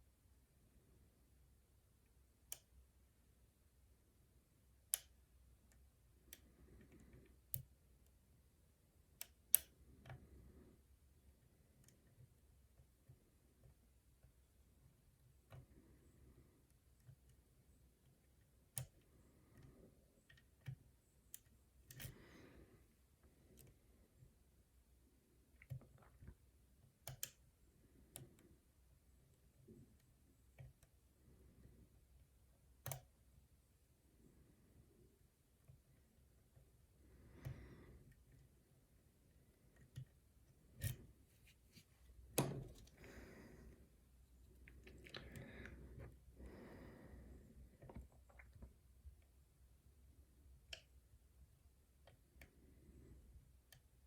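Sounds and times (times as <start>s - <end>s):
lock pick clicking on pins: 18.6s - 22.3s.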